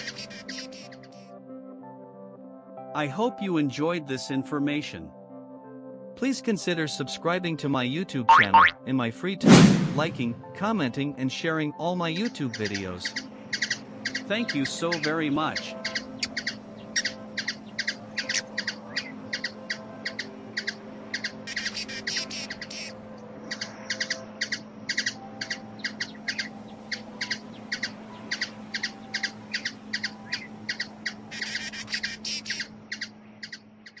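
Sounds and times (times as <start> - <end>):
bird chirping: 12.5 - 34.0.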